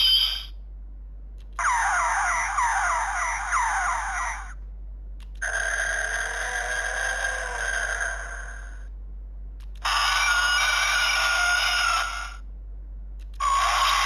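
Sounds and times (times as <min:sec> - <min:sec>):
quick falling electronic chirps: 0:00.0 - 0:00.5.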